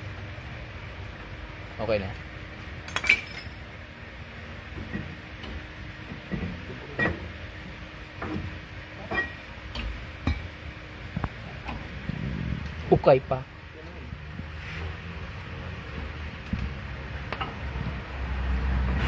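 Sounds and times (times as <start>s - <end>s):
steady low hum: 0.0s - 19.0s
tools clinking on metal: 2.9s - 3.6s.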